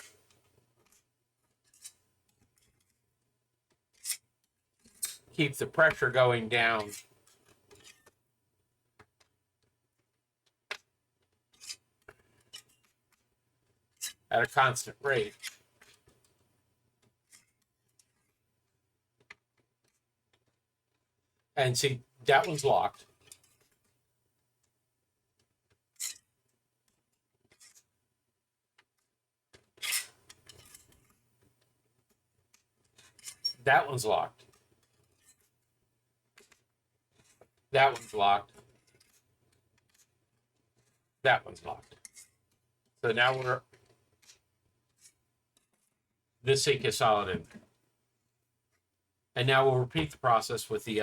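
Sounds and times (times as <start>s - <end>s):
metallic scrapes of screwdriver: 1.6s - 2.0s, 3.9s - 5.3s, 13.9s - 14.2s, 26.0s - 26.3s, 27.5s - 27.9s, 29.8s - 31.1s, 32.9s - 35.5s, 41.8s - 42.4s.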